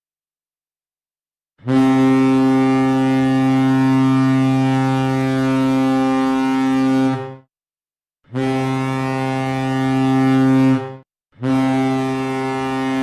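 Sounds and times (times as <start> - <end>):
goal horn blast: 1.6 - 4.8, 8.4 - 13.0.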